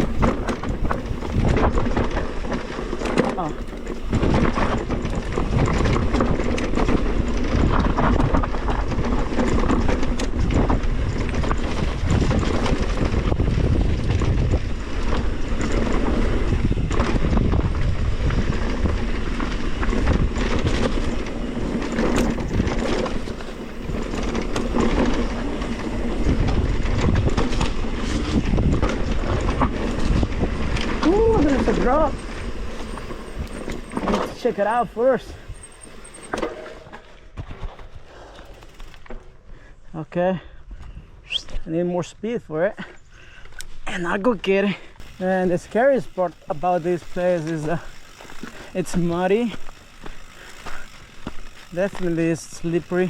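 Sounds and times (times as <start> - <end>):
chain and frame rattling: 0.0 - 36.9, 45.0 - 53.0
bike tyres rolling on dirt: 0.0 - 53.0.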